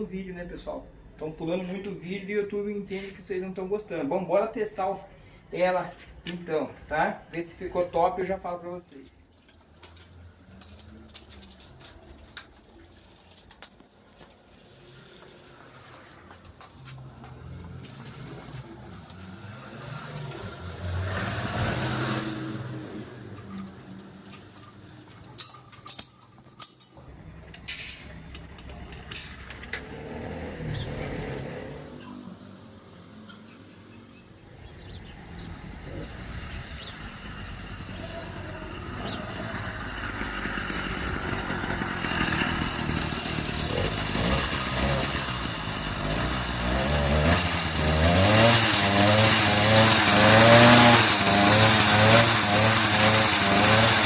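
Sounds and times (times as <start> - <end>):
two-stroke engine revving: 15.2 - 25.6, 27.0 - 54.0
engine clicks and knocks: 23.6 - 30.3.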